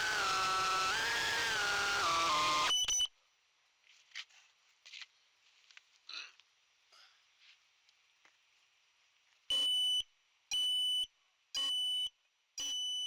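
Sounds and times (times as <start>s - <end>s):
high buzzer beeps: 9.5s - 13.0s.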